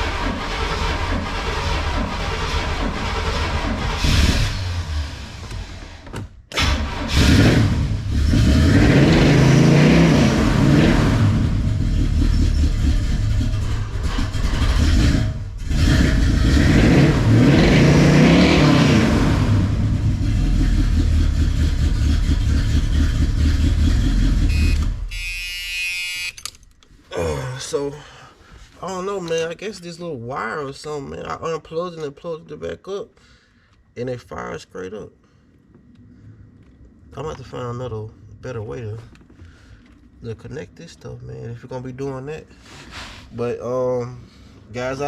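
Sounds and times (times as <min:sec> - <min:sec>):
car engine running: 0:10.2 - 0:25.0
car engine idling: 0:19.5 - 0:25.0
short buzzing tone: 0:24.5 - 0:26.6
clicks: 0:26.2 - 0:27.0.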